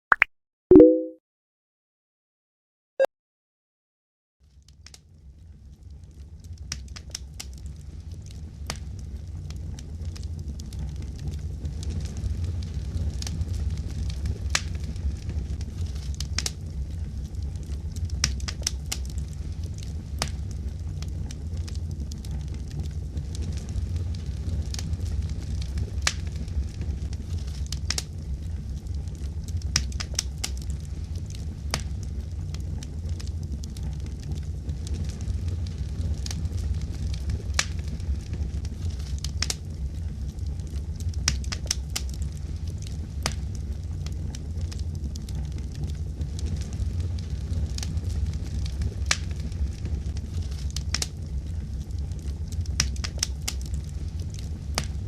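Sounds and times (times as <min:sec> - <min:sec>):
fireplace fire crackling: 0:04.4 - 0:55.0.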